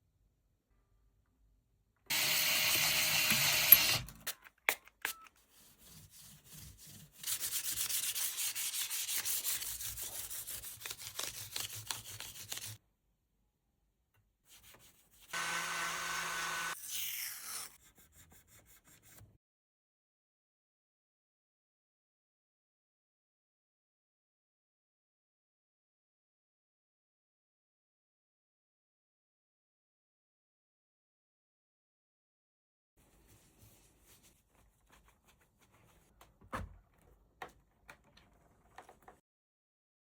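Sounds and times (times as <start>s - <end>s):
sanding strokes: 5.5s - 12.8s.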